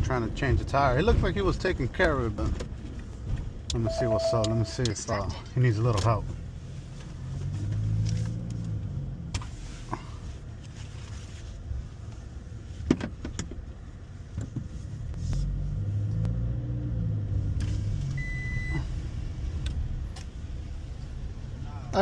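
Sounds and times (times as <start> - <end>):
car engine and tyre rumble: 0.0 - 22.0
short steady beep: 3.8 - 4.8, 18.2 - 18.8.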